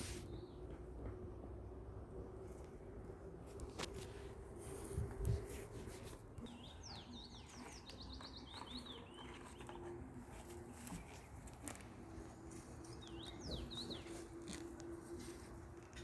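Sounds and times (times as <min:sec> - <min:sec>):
songbird chirping: 0:06.4 - 0:16.0.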